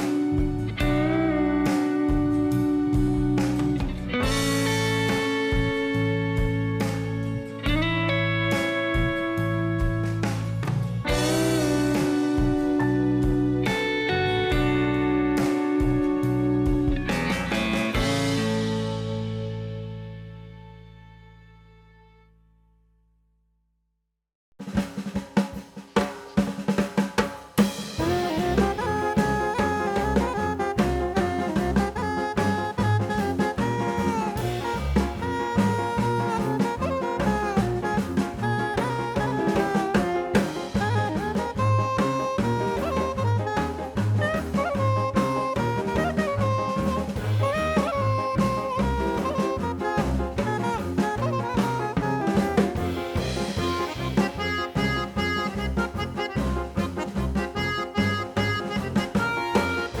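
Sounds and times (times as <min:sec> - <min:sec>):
drum fills: 0:00.0 - 0:19.7, 0:24.6 - 1:00.0
full band playing: 0:00.0 - 0:20.3, 0:24.7 - 1:00.0.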